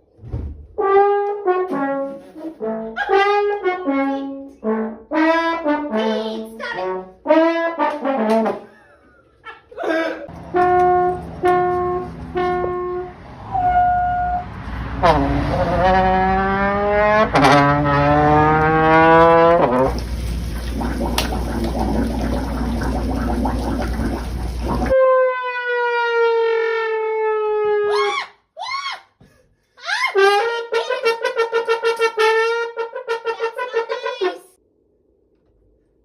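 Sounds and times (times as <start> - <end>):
comic horn sound effects: 0.8 - 8.7, 10.3 - 20.1, 24.8 - 28.1, 30.1 - 34.6
long sinking tone: 10.4 - 25.2.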